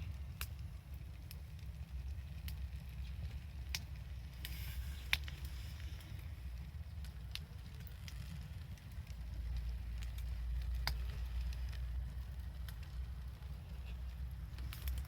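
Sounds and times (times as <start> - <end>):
wood bonfire crackling: 0.0 - 15.0
low rumble: 1.7 - 15.0.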